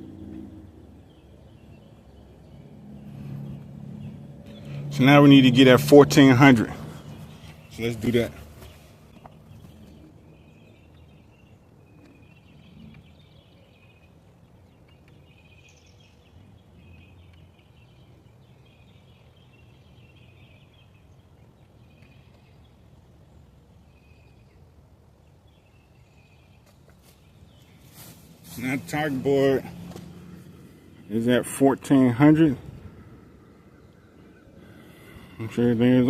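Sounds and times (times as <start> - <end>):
low steady rumble: 0.0 - 10.4
faint birds chirping: 0.0 - 36.0.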